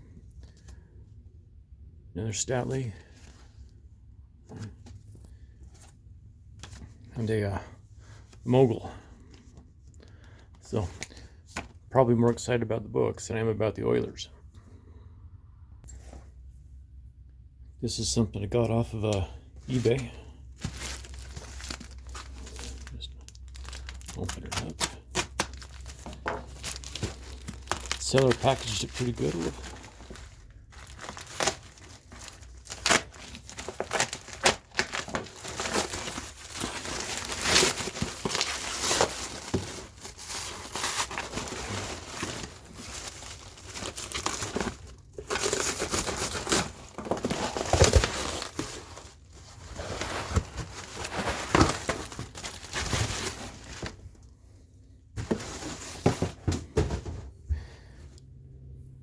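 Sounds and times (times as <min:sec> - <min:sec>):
packing material crinkling and tearing: 0:19.7 - 0:54.2.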